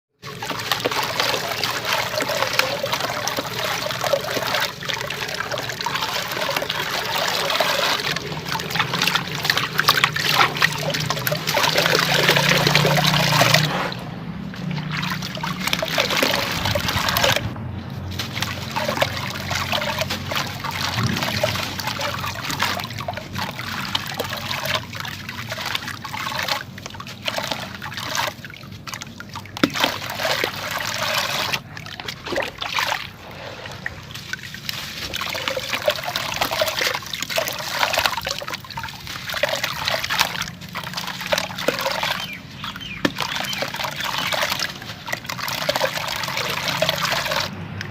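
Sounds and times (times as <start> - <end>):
water trickling: 0.2 - 47.9
wet sand-cement crumbling: 14.5 - 25.9.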